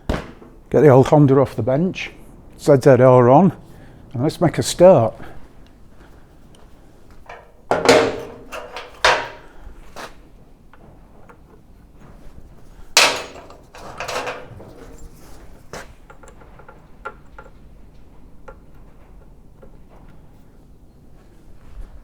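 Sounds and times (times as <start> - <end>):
heavy clunks and clattering: 7.1 - 19.2.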